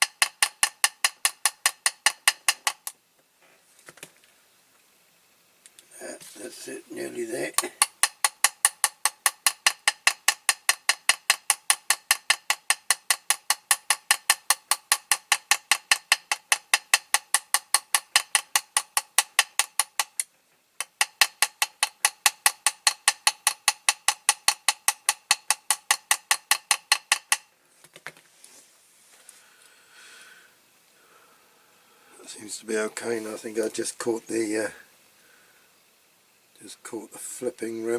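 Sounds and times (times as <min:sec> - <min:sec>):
small hammer tapping metal: 0:00.0 - 0:03.0, 0:07.5 - 0:27.5.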